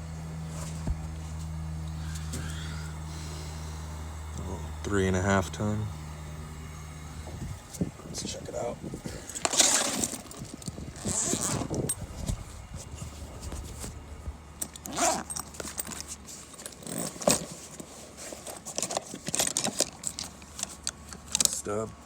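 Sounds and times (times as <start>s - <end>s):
air conditioner unit humming: 0.0s - 22.0s
metal tools clinking and rattling: 9.1s - 12.2s, 14.6s - 21.9s.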